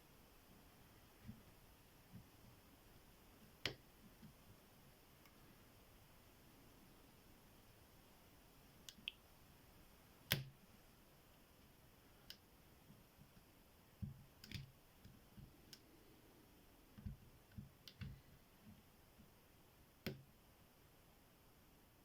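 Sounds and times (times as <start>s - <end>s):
lock pick clicks and taps: 14.0s - 15.8s.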